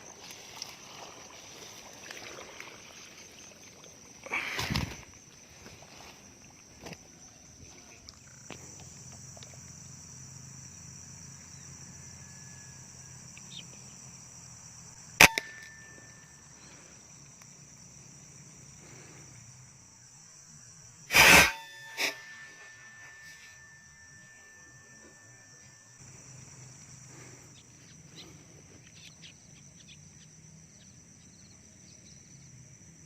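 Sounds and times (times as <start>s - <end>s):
crickets and insects buzzing: 0.0s - 33.0s
air rifle shot: 15.2s - 15.8s, 21.1s - 22.2s.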